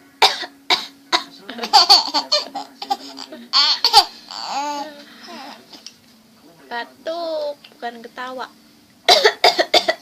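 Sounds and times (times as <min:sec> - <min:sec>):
person giggling: 0:01.5 - 0:05.6.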